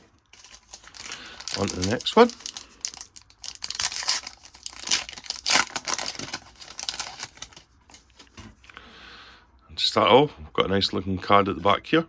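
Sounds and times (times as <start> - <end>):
wrapper tearing and crinkling: 0.0 - 8.4.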